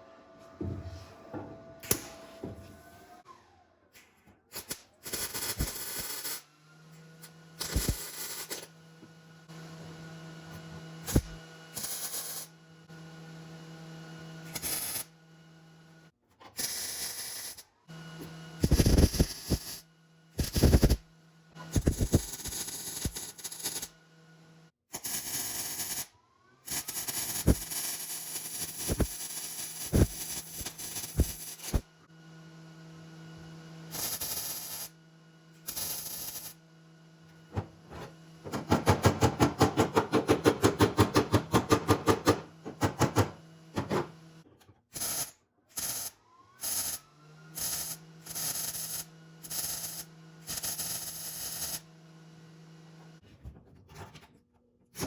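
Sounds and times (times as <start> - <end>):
welding crackle: 7.6 - 8.7, 18.6 - 19.7, 20.4 - 21.0, 21.7 - 23.7, 26.8 - 31.8, 35.7 - 36.6, 47.6 - 51.8.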